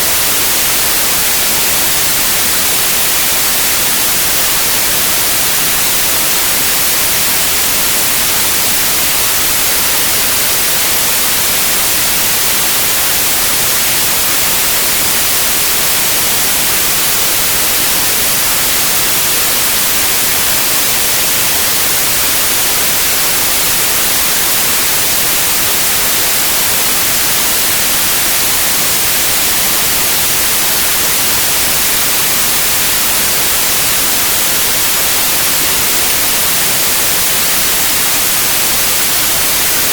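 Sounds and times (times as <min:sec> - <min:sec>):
loud steady white noise hiss: 0:00.0 - 0:39.9.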